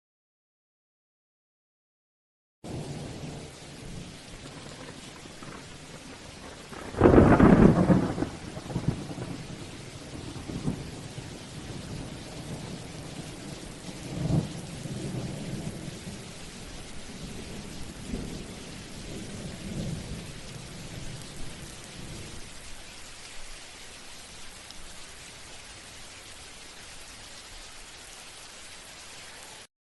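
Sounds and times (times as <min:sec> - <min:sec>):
steady rain: 0:02.6 - 0:29.7
loud thunderclap: 0:02.7 - 0:16.2, 0:17.2 - 0:22.3
rolls of thunder: 0:02.7 - 0:16.4, 0:17.1 - 0:22.4.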